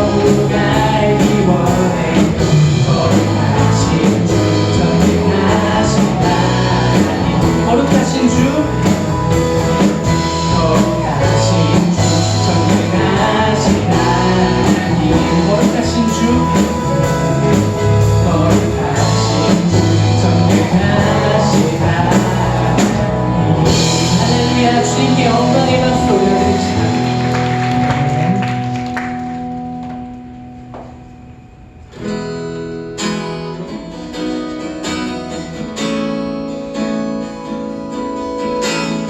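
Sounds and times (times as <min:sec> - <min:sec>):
drum kit beat: 0:00.0 - 0:29.8
live band playing: 0:00.0 - 0:39.0.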